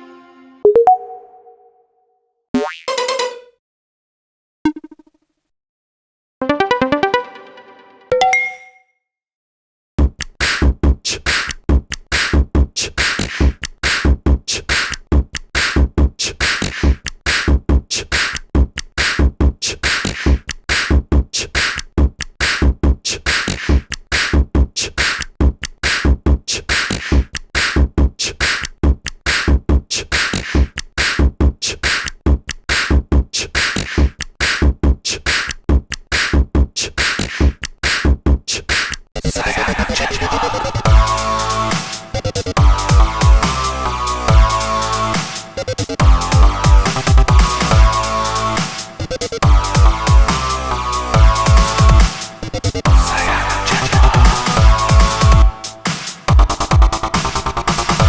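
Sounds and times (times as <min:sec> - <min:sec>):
electronic ringtone with drum beat: 0:00.7 - 0:01.7, 0:02.6 - 0:03.5, 0:06.4 - 0:07.4, 0:46.0 - 0:48.0, 0:51.2 - 0:52.2, 0:53.7 - 0:55.6.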